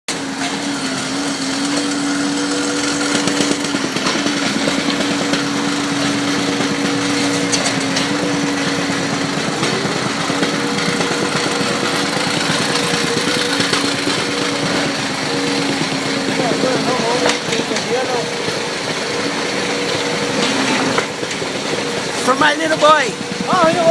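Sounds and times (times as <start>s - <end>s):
construction machine engine rattling: 0.1s - 23.9s.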